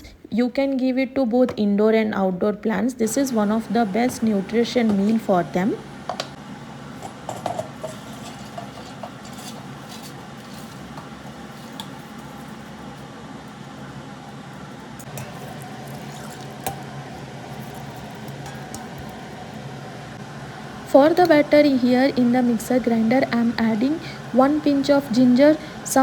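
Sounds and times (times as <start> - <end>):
steady low hum: 2.2 - 26.0
water pouring and swirling: 15.2 - 16.7.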